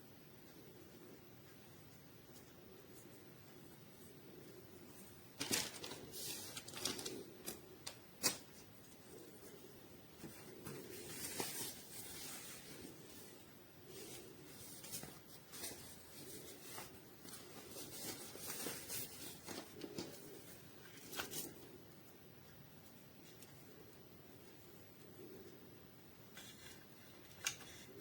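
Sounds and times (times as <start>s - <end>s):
faint rustling and rubbing: 2.2s - 21.8s.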